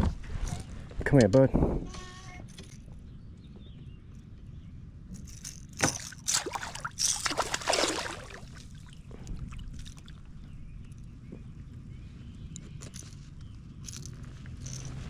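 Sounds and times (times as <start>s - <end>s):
low rumble of water and wind: 0.0s - 15.0s
water splashing and sloshing: 5.8s - 10.3s.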